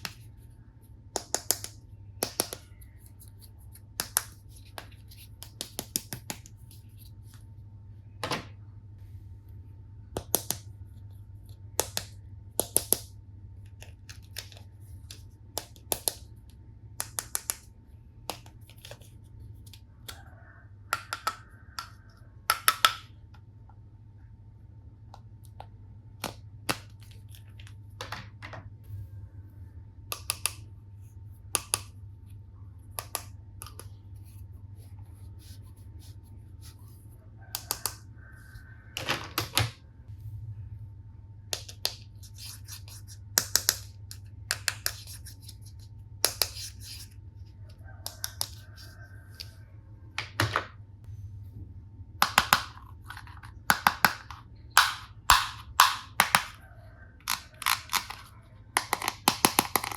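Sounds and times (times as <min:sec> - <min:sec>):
plastic toy pieces clicking: 0:57.2 - 0:59.9.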